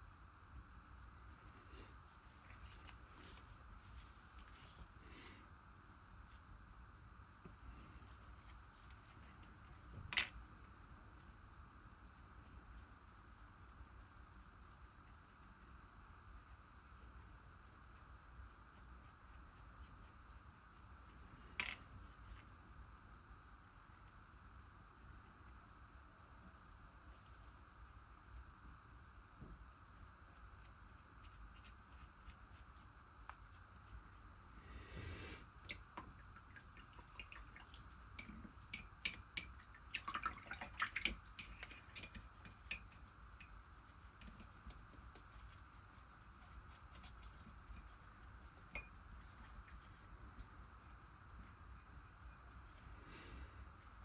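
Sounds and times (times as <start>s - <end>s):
faint steady hum: 0.0s - 54.0s
soft brushing rustle: 0.1s - 5.4s, 7.5s - 9.9s
paintbrush scratching on foam: 12.2s - 21.3s, 27.0s - 34.3s, 42.4s - 48.8s.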